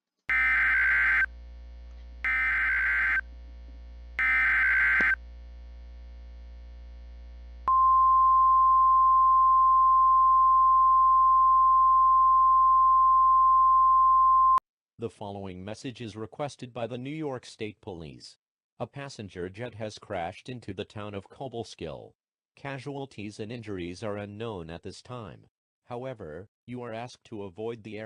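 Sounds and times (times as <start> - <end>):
harsh digital data bursts: 0.3 - 1.3, 2.3 - 3.2, 4.2 - 5.2
steady single-pitch attention tone: 2.2 - 3.2, 4.2 - 5.2, 7.7 - 14.6.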